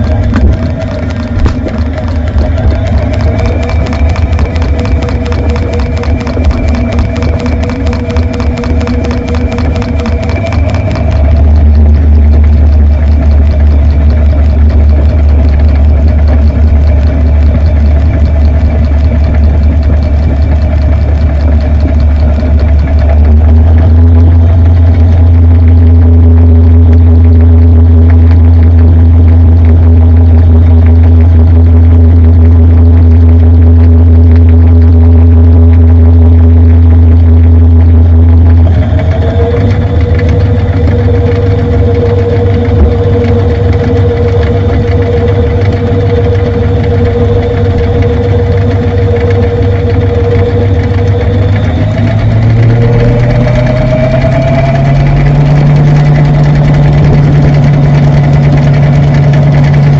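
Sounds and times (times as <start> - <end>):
washing machine motor hum and whine: 0.0 - 59.9.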